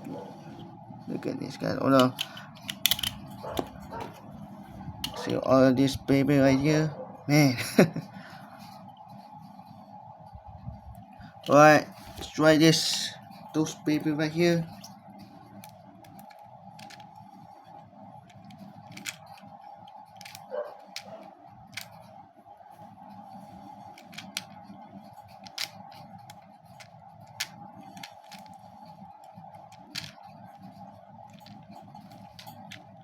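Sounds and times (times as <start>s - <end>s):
steady background hum: 0.0s - 33.0s
sharp plastic clicks: 2.0s - 4.1s.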